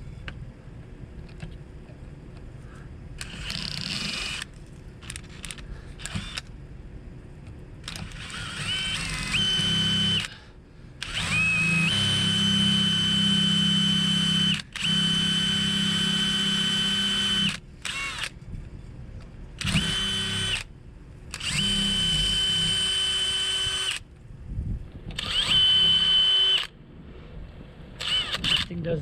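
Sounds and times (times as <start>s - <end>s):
electric drill whining: 3.2s - 6.5s, 7.8s - 10.4s, 11.0s - 18.4s, 19.6s - 20.7s, 21.3s - 24.1s, 25.2s - 26.7s, 28.0s - 28.7s.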